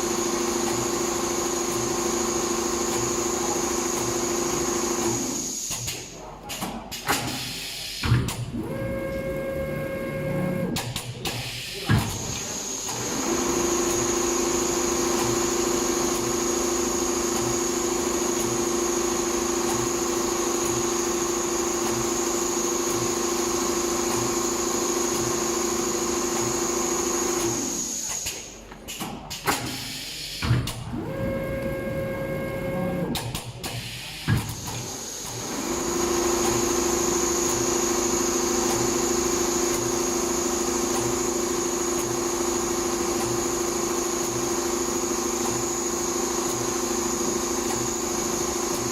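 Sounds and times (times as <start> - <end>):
sewing machine whine: 0.0 - 5.6, 12.6 - 28.1, 34.6 - 48.9.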